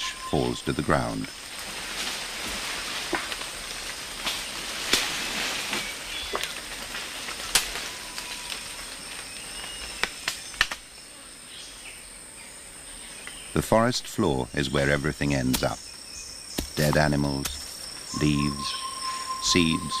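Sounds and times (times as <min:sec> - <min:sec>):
foliage rustling: 0:00.0 - 0:10.9, 0:14.1 - 0:20.0
high insect drone: 0:00.0 - 0:20.0
twigs snapping and falling: 0:01.8 - 0:10.9.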